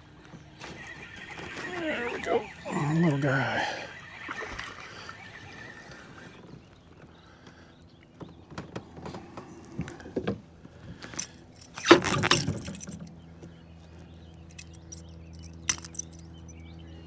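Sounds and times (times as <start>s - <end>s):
fish thrashing: 0.8s - 6.4s
metallic rattles of fishing lure: 4.0s - 6.0s, 11.2s - 13.1s, 14.5s - 16.2s.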